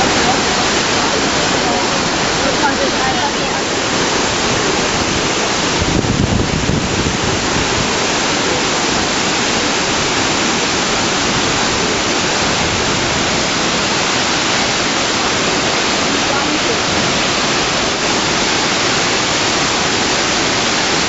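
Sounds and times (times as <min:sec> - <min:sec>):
waterfall crashing: 0:00.0 - 0:21.0.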